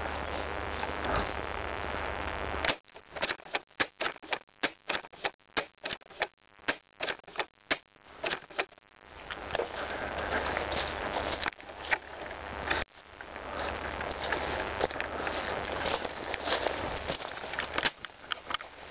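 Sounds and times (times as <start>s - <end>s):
rustling: 0.0s - 6.4s, 7.1s - 18.9s
sharp clicks: 2.6s - 9.4s.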